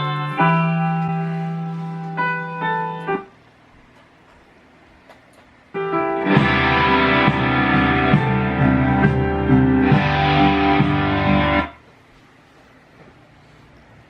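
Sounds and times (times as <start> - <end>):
loud rock music with guitar: 6.2 - 11.7.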